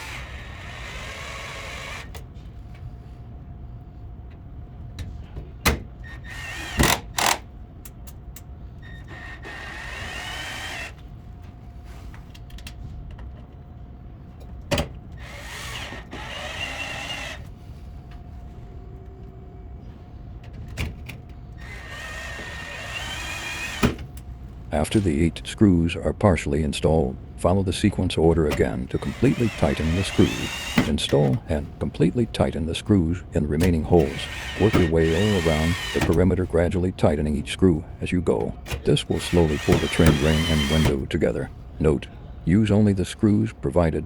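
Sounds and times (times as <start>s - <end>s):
cordless drill motor whine: 0.0s - 2.2s, 6.2s - 7.4s, 8.8s - 11.0s, 15.2s - 17.5s, 21.6s - 24.0s, 28.6s - 31.4s, 33.9s - 36.3s, 39.1s - 41.1s.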